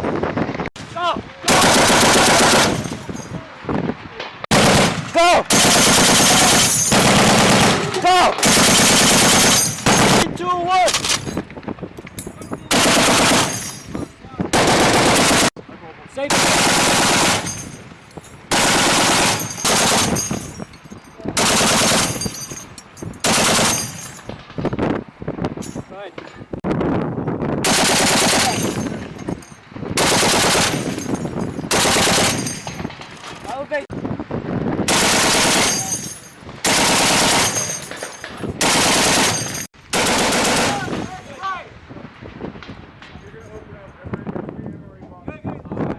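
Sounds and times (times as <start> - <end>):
machine gun bursts: 1.5 - 2.9, 4.5 - 10.3, 12.7 - 13.6, 14.5 - 15.5, 16.3 - 17.6, 18.5 - 20.4, 21.4 - 22.4, 23.2 - 24.0, 27.7 - 28.8, 30.0 - 31.0, 31.7 - 32.6, 34.9 - 36.0, 36.6 - 38.0, 38.6 - 41.2.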